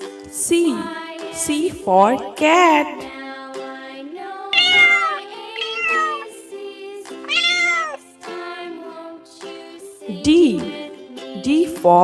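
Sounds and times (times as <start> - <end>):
children's background tune: 0.0 - 12.0
cat meowing: 4.6 - 6.3, 7.3 - 8.0.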